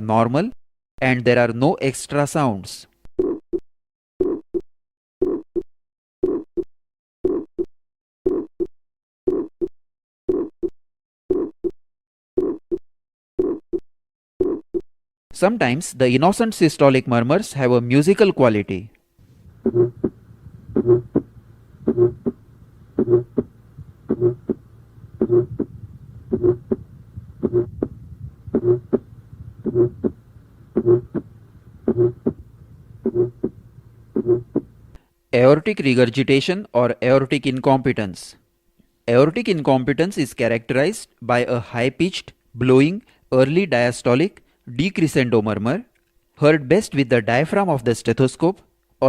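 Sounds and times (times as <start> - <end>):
heartbeat with faint murmur: 19.4 - 34.8.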